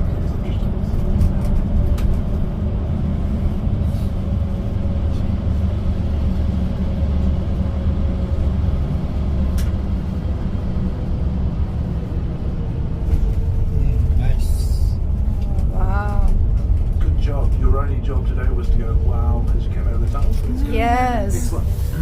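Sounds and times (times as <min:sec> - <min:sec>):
engine and road rumble: 0:00.0 - 0:22.0.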